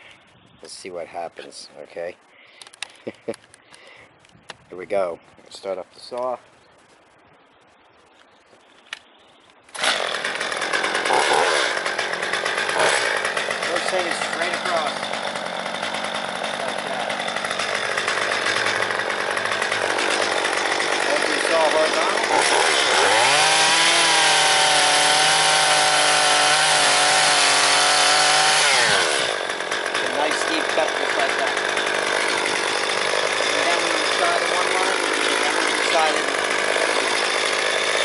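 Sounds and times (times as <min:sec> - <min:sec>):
chainsaw running: 0:09.7 - 0:38.0.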